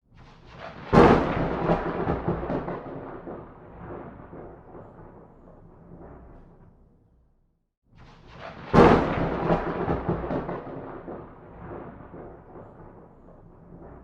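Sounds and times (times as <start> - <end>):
thunder rumbling and cracking: 0.3 - 6.9, 8.2 - 14.0.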